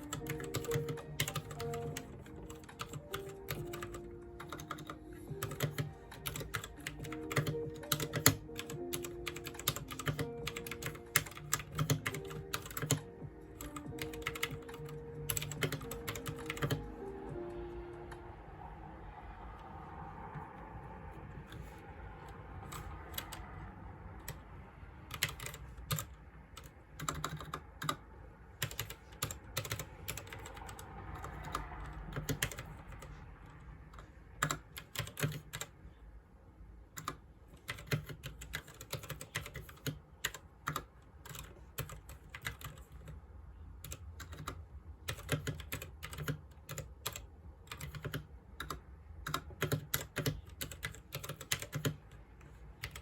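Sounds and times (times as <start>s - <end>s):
keyboard typing clicks: 0.0s - 18.3s, 25.1s - 28.0s, 28.6s - 33.1s, 33.9s - 35.7s, 36.9s - 43.2s, 43.8s - 52.2s, 52.8s - 53.0s.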